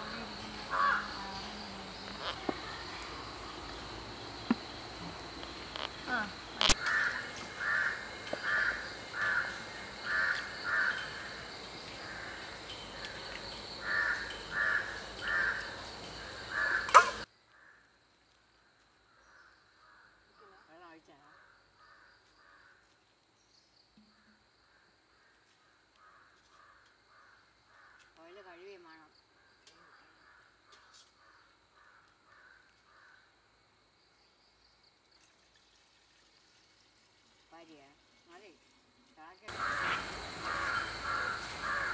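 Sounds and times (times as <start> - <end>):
crow cawing: 0.7 - 1.2, 6.7 - 11.4, 12.0 - 13.1, 13.8 - 17.8, 21.3 - 22.9, 26.0 - 28.1, 30.2 - 33.2, 39.5 - 41.9.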